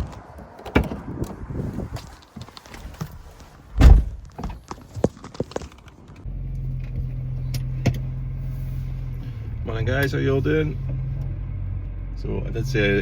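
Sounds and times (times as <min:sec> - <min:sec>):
car door shutting: 0:02.7 - 0:04.6.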